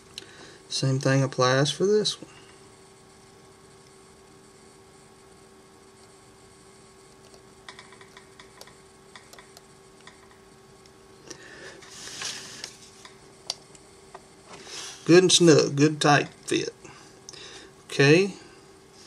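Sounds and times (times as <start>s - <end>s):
steady electrical hum: 0.0s - 19.0s
small clicks and rustling of hands: 7.2s - 10.9s.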